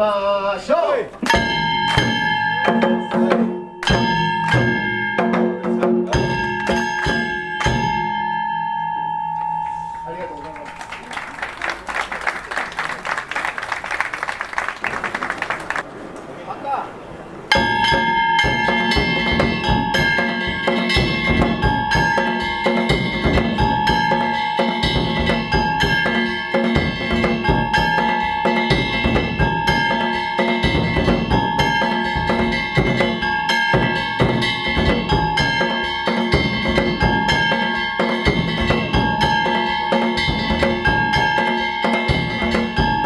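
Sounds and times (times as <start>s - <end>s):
taiko drums beating fast: 1.2s - 8.2s, 17.5s - 43.0s
small hand gongs ringing: 1.3s - 10.4s, 17.5s - 43.0s.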